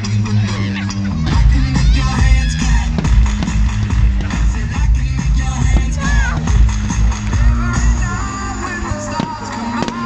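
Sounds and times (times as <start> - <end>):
music with melody: 0.0 - 10.0
firework cracks: 2.6 - 10.0.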